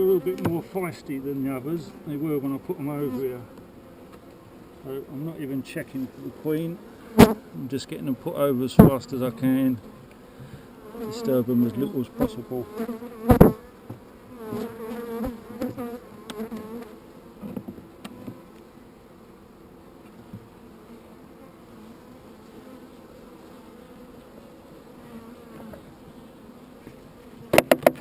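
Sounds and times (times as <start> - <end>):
honeybees buzzing: 0.0 - 28.0
sharp knocks: 27.5 - 28.0.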